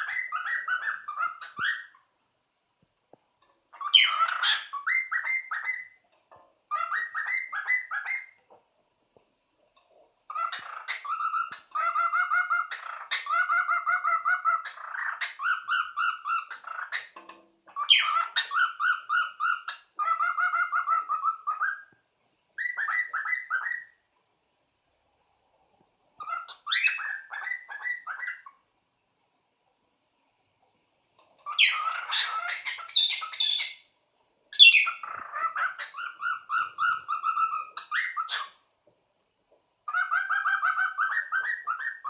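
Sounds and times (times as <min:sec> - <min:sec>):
cockatiel whistling and warbling: 0:00.0 - 0:02.0, 0:03.8 - 0:06.0, 0:06.7 - 0:08.4, 0:10.3 - 0:17.1, 0:17.8 - 0:21.9, 0:22.6 - 0:24.0, 0:26.2 - 0:28.6, 0:31.5 - 0:33.8, 0:34.6 - 0:38.6, 0:39.9 - 0:42.0.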